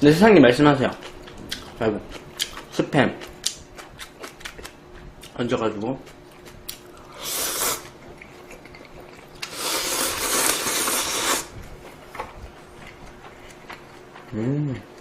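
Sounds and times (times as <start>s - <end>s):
noodles being slurped: 9.4s - 11.5s.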